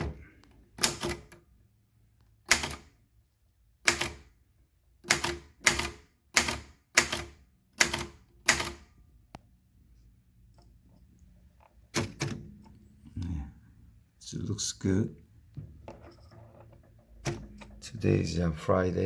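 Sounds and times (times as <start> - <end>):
typewriter keystrokes: 0.8 - 1.4, 2.4 - 3.0, 3.8 - 4.3, 5.0 - 8.9, 11.9 - 12.4.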